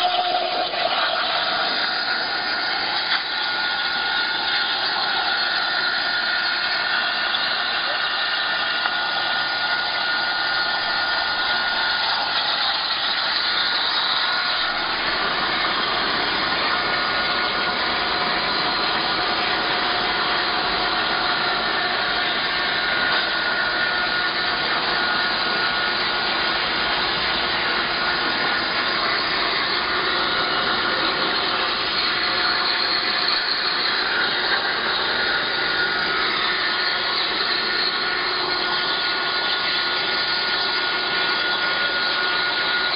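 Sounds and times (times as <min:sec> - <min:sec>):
plasma torch cutting steel: 0:00.0 - 0:42.9
high whistle: 0:20.4 - 0:42.9.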